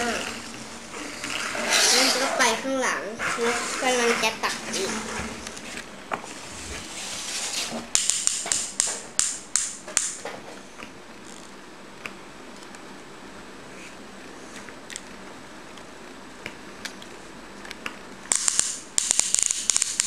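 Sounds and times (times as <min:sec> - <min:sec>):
plastic toy clicks and taps: 0:08.0 - 0:10.3, 0:18.3 - 0:20.0.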